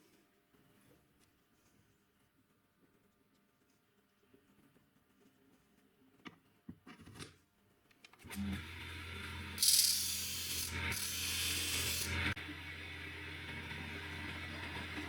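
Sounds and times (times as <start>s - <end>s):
grinder motor humming: 8.3s - 15.0s
drill bit grinding hiss: 9.6s - 12.4s.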